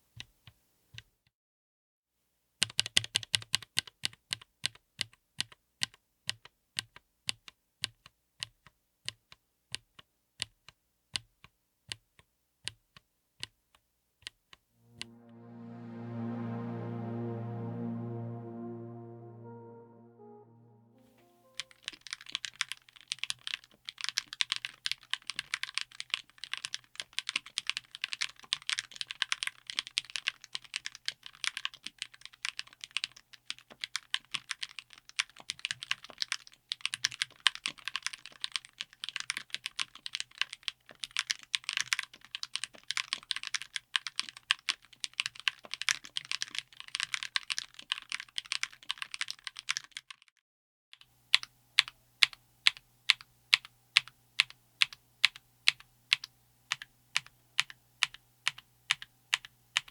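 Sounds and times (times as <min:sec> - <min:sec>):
rapid mechanical keyboard typing: 0:22.5 - 0:50.2.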